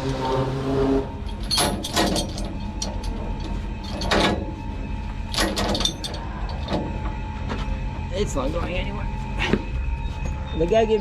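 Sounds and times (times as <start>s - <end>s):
metallic clanks and rattles: 1.0s - 7.8s.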